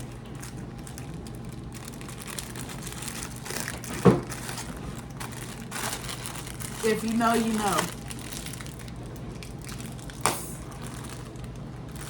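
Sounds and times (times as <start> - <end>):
plastic bag crinkling: 0.0 - 12.0.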